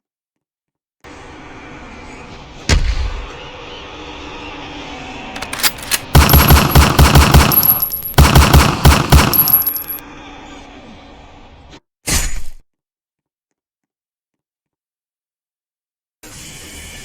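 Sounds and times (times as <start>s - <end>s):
automatic gunfire bursts: 5.4s - 10.0s.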